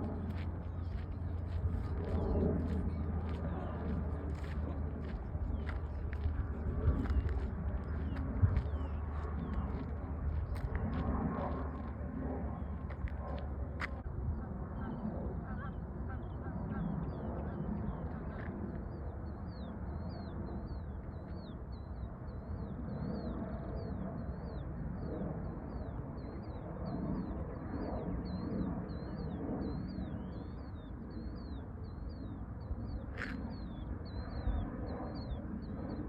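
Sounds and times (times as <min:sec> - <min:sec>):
low rumbling background: 0:00.0 - 0:25.1.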